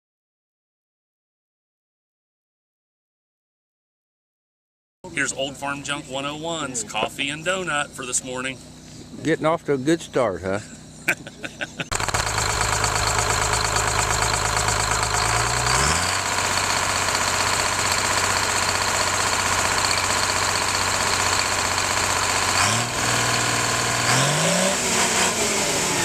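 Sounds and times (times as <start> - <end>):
engine revving: 11.9 - 26.0.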